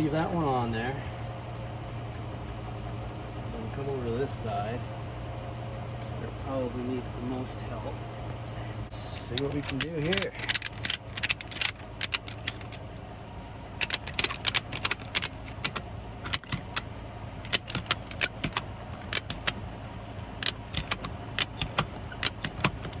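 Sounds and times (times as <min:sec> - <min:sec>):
ratchet strap clicking: 0:09.1 - 0:13.0, 0:13.8 - 0:23.0.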